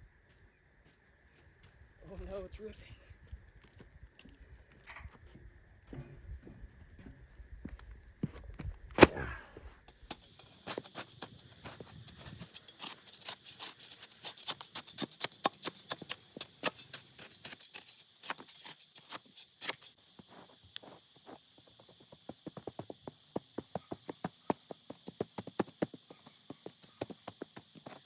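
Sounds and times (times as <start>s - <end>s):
faint high whine: 0.0s - 28.0s.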